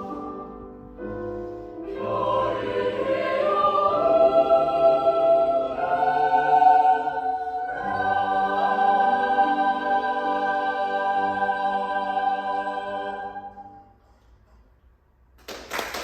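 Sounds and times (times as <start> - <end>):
choir singing sustained chords: 0.0 - 14.0.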